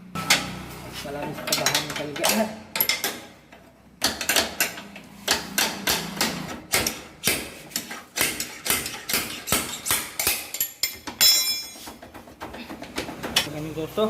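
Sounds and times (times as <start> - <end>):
hammer striking metal axle: 1.3 - 12.0.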